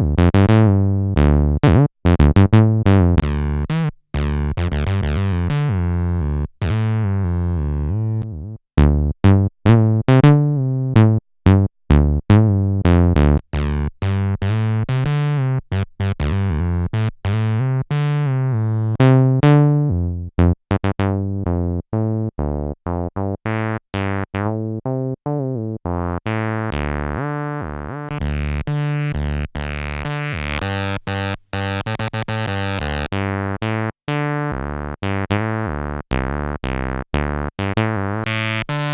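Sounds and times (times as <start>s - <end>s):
squelchy acid synth bassline: 26.6s - 33.1s, 38.2s - 38.9s.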